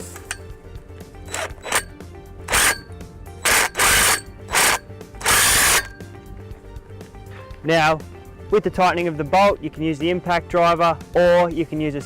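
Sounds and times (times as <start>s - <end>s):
impact driver hammering: 1.3s - 1.9s, 2.5s - 6.0s.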